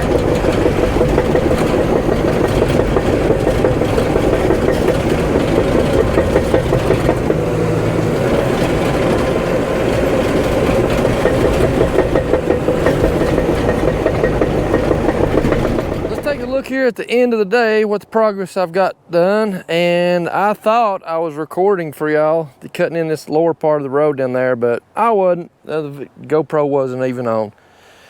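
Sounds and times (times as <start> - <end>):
bulldozer diesel engine: 0.0 - 17.0
steel crawler tracks clattering: 0.0 - 17.8.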